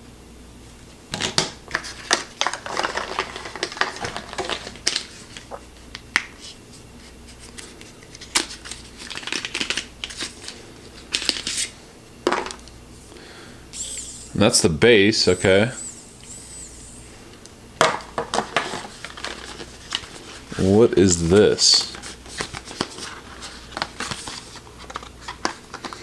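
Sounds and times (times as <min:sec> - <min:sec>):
packaging rustling: 0:01.7 - 0:05.5, 0:07.4 - 0:11.8, 0:18.4 - 0:20.6, 0:21.8 - 0:26.0.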